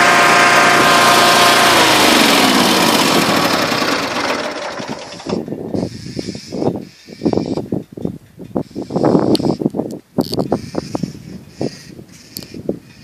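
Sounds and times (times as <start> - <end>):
loud engine passing by: 0.0 - 5.5.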